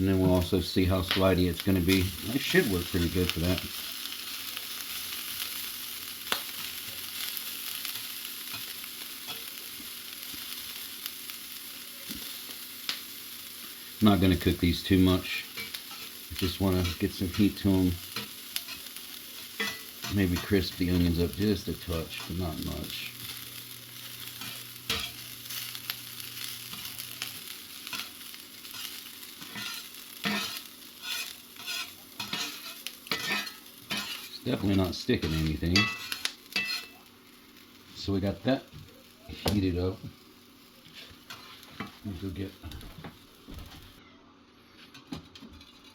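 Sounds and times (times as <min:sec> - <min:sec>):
food sizzling in a skillet: 0:00.0 - 0:44.0
utensil scraping and tapping pan: 0:28.8 - 0:34.3.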